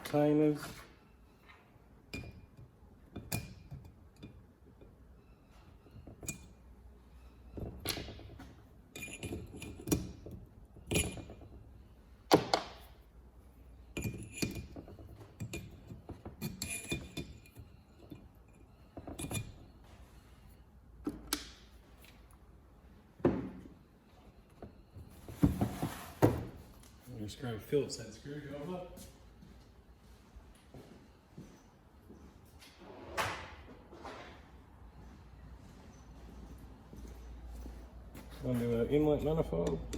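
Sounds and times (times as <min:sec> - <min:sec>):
metal parts and tools clinking: 0:07.6 - 0:11.6, 0:13.8 - 0:19.8.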